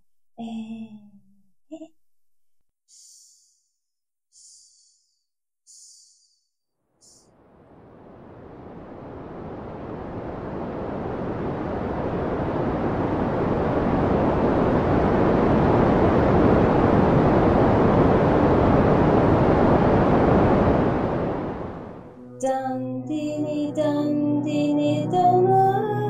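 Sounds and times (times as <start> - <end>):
steady rushing noise: 7.0 - 22.2.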